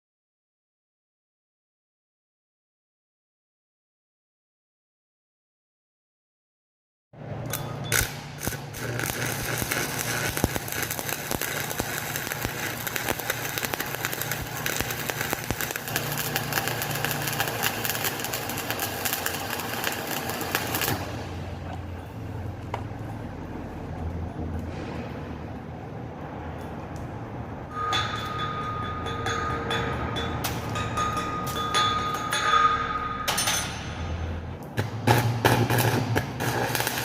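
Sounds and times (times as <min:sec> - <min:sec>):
welding arc crackling: 0:07.5 - 0:21.8, 0:34.5 - 0:37.0.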